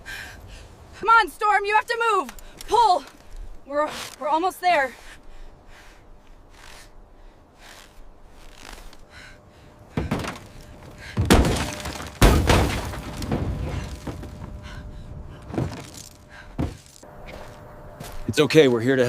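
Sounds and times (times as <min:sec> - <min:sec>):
heavy thuds: 0:09.8 - 0:18.3
crashing rumble: 0:10.0 - 0:16.3.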